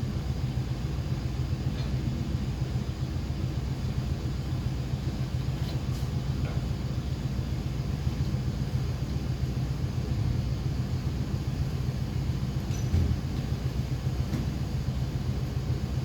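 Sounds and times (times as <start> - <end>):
equipment hum and rumble: 0.0 - 16.0.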